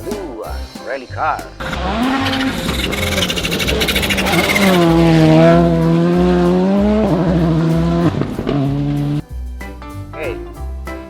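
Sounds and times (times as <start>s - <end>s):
music with steady low beat: 0.0s - 11.0s
racing car engine revving: 1.6s - 9.2s.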